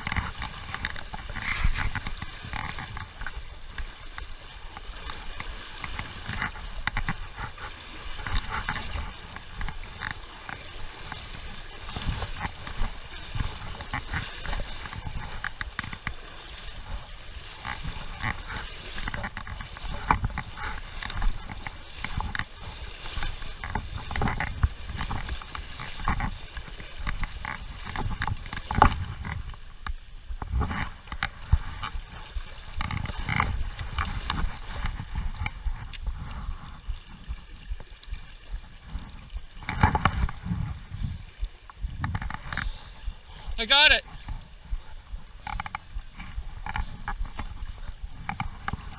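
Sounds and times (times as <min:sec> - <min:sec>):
water sloshing around legs: 0:00.0 - 0:29.8.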